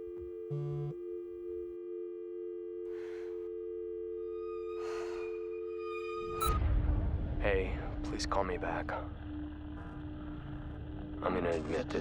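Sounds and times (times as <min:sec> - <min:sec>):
telephone dial tone: 0:00.0 - 0:05.0.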